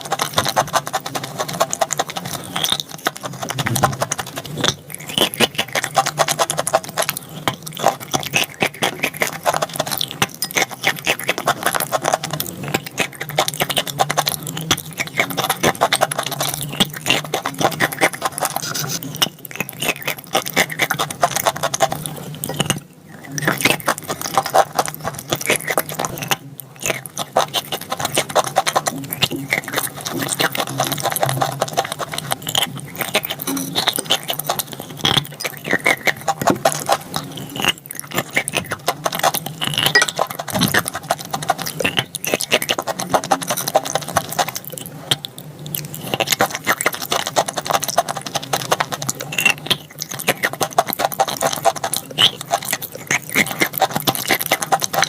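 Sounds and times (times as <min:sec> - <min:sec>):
crunching and chewing chalk: 0:00.0 - 0:55.0.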